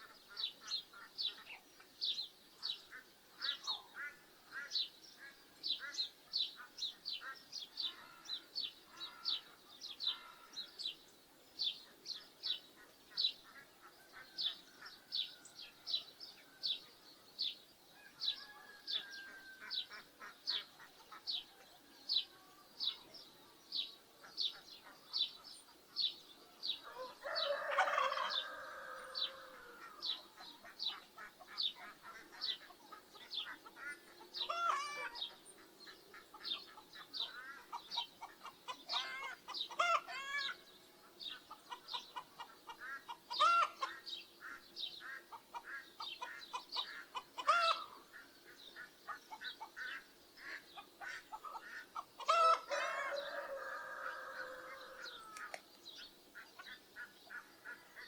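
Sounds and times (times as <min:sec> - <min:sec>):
rooster crowing: 0:18.0 - 0:19.6, 0:26.9 - 0:29.8, 0:52.3 - 0:55.3
hens clucking: 0:26.8 - 0:40.6, 0:41.2 - 0:55.6.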